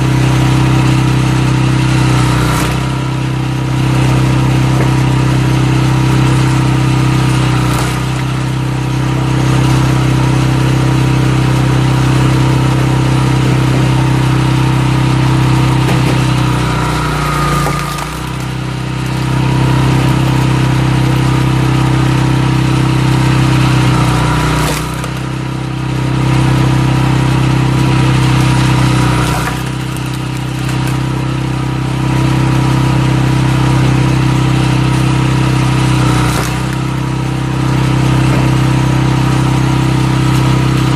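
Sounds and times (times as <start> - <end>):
small engine running under load: 0.0 - 40.9.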